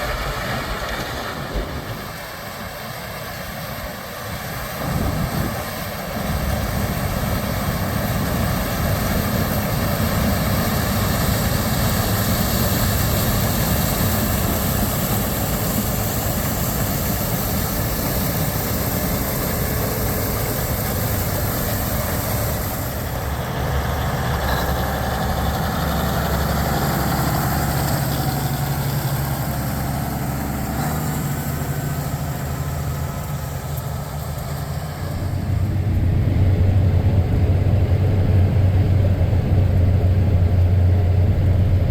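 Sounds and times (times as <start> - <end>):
diesel farm machinery running: 0.0 - 41.9
deep engine hum: 4.8 - 41.9.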